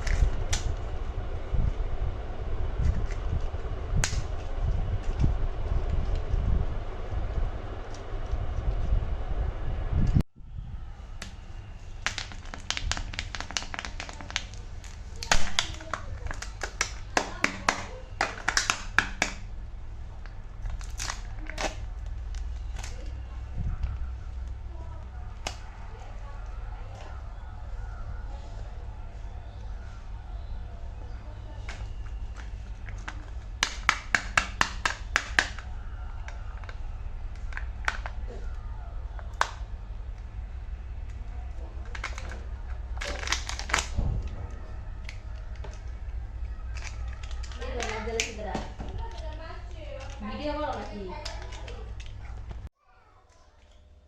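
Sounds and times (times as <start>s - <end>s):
packaging crackling: 0.0s - 0.9s, 11.2s - 25.7s, 31.4s - 40.4s, 41.0s - 52.7s
steady low hum: 0.0s - 52.7s.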